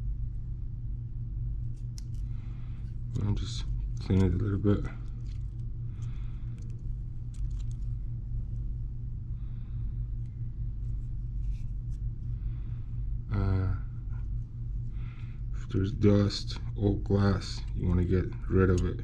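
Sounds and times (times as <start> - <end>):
low electrical hum: 0.0 - 19.0.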